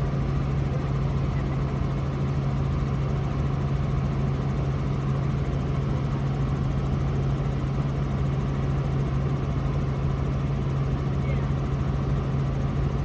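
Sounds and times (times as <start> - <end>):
helicopter engine and rotor drone: 0.0 - 13.0.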